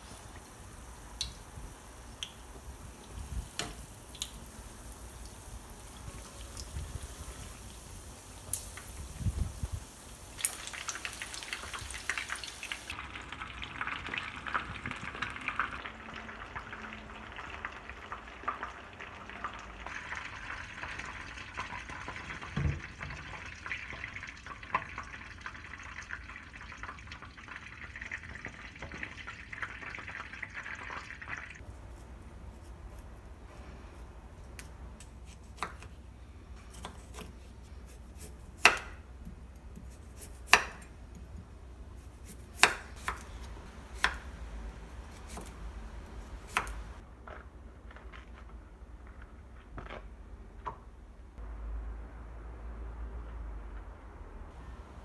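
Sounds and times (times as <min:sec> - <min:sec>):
food frying in hot oil: 0:00.0 - 0:35.9.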